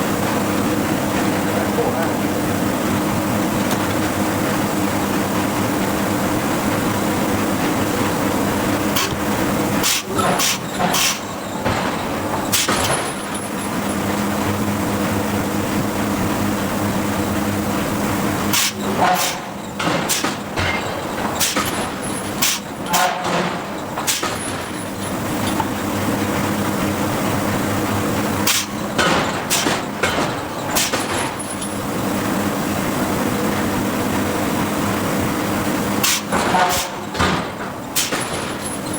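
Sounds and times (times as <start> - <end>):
forging hammer strikes on steel: 18.5 - 24.7, 36.0 - 38.5.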